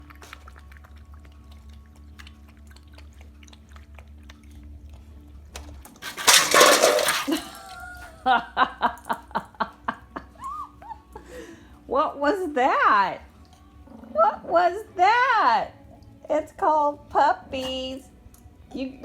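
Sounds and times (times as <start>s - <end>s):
water splash and clatter: 6.0s - 7.8s.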